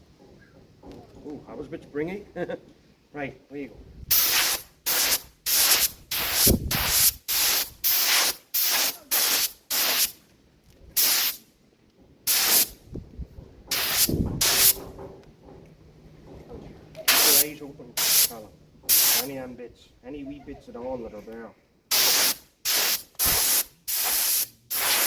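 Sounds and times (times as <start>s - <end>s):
spray paint hissing: 4.1s - 10.2s, 11.0s - 11.5s, 12.3s - 12.8s, 13.7s - 14.9s, 17.1s - 19.4s, 21.9s - 25.0s.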